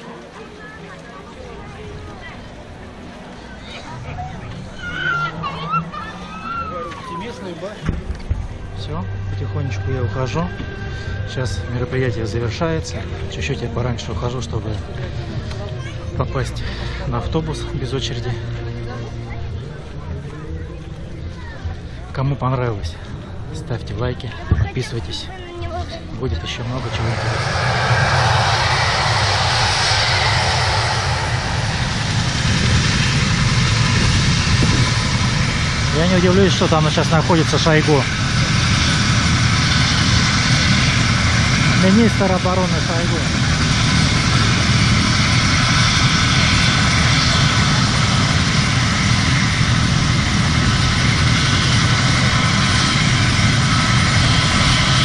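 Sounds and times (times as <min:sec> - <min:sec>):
helicopter engine and rotor: 0:26.8 - 0:55.0.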